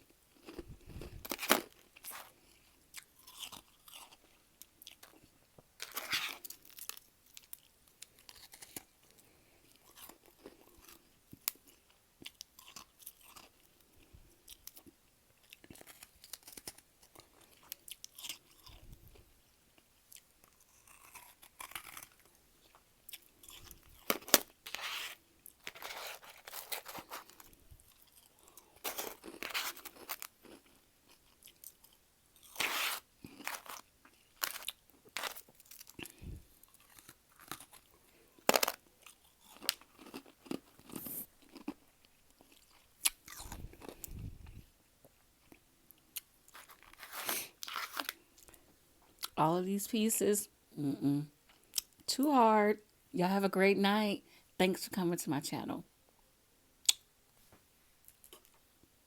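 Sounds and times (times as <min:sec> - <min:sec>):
chewing ice crunches: 0:00.4 - 0:18.9, 0:20.0 - 0:44.1.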